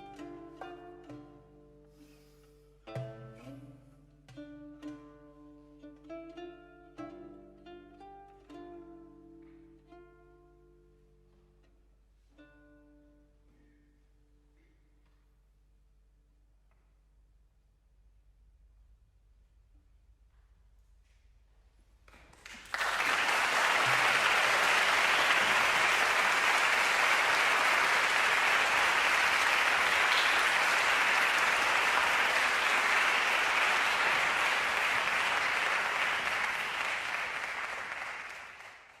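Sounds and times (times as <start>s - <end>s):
audience applauding: 22.2s - 39.0s.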